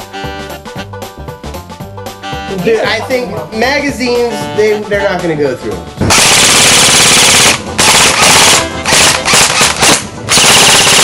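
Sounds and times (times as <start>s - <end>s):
automatic gunfire bursts: 6.1s - 11.0s.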